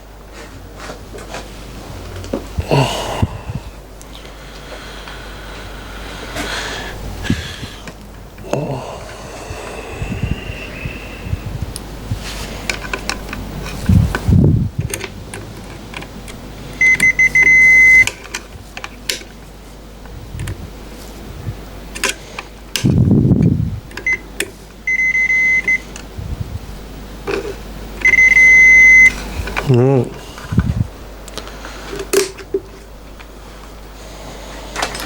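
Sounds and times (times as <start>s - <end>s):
continuity tester beeping: 16.3s - 18.3s, 24.0s - 26.1s, 27.4s - 29.6s
clicks from handling wires: 21.9s - 23.0s, 30.6s - 33.8s.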